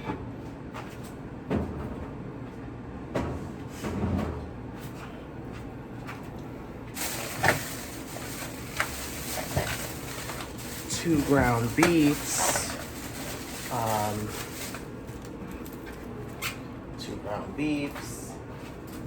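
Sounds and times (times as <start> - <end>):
packages knocking and thumping: 7.0 - 15.2.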